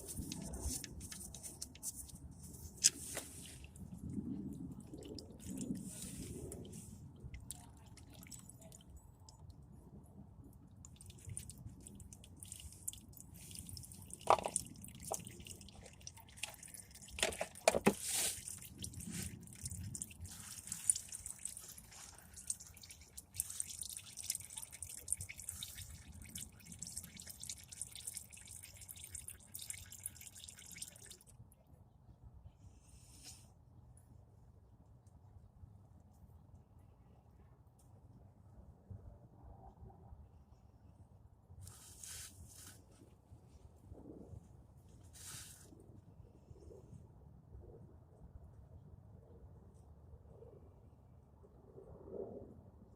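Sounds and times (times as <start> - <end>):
oil dripping into pan: 10.8 - 17.8, 18.4 - 31.3.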